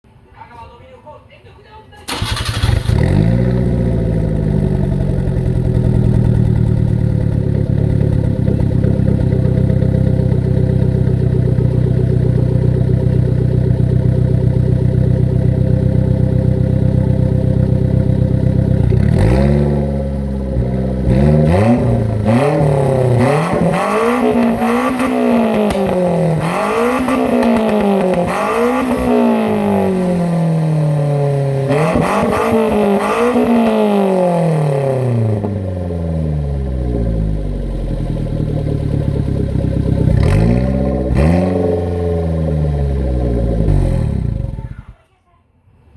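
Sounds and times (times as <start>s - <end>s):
car engine idling and revving: 2.1s - 44.8s.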